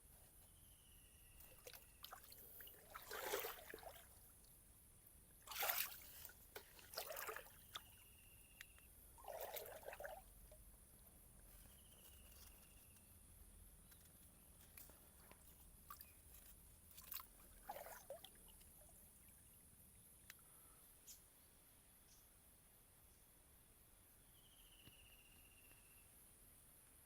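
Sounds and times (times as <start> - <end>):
faint rustles and clicks: 11.3 - 13.2.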